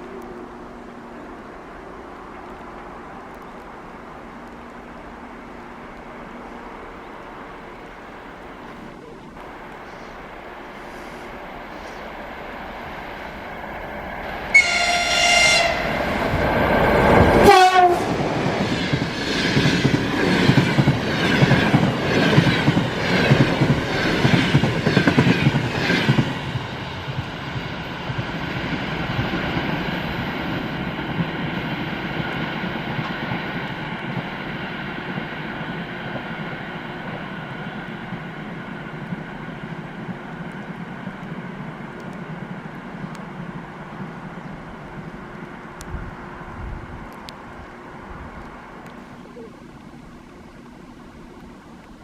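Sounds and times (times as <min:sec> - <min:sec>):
locomotive passing by: 0:00.0 - 0:52.0
train horn blast: 0:14.5 - 0:16.4, 0:17.3 - 0:18.2.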